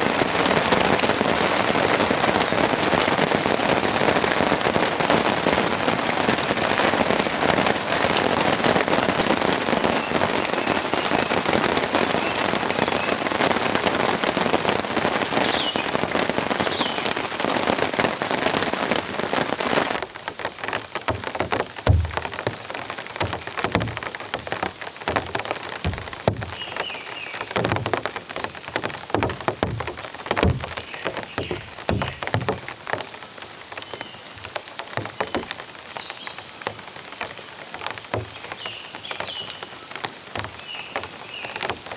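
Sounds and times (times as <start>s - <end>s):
heavy rain falling: 0.0s - 41.9s
heavy drops knocking: 20.3s - 33.1s.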